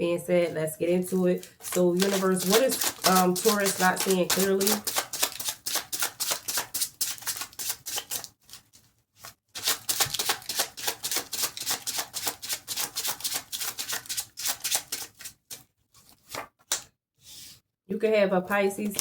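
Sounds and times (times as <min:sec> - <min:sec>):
cards being shuffled: 0:01.4 - 0:16.9.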